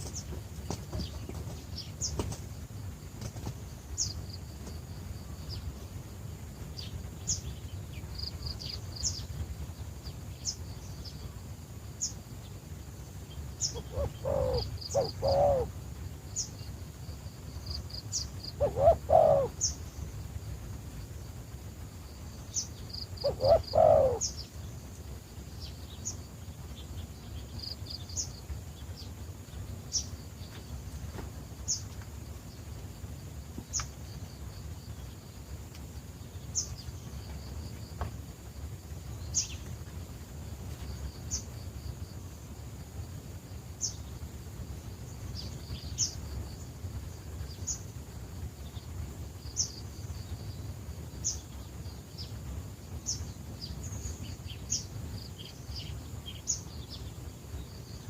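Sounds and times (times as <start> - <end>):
small bird chirping: 0.0 - 21.4, 22.0 - 32.6, 36.2 - 38.1, 39.0 - 40.0, 45.0 - 48.0, 48.6 - 58.0
steady low background noise: 0.0 - 58.0
dove cooing: 13.6 - 15.8, 18.4 - 19.8, 23.2 - 24.4.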